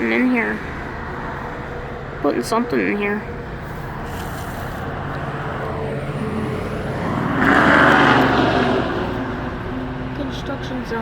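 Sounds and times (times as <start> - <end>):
low engine hum: 0.0 - 11.0
vehicle driving past: 3.2 - 10.9.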